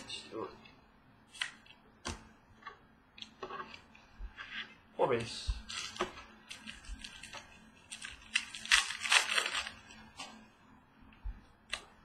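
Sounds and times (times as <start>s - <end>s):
cards and wrapping crinkling: 5.6s - 10.0s.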